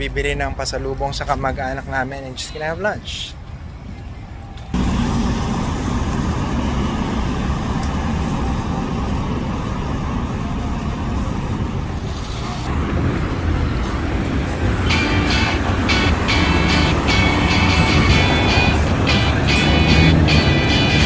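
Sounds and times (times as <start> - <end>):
passing cars rumble: 4.7 - 21.0.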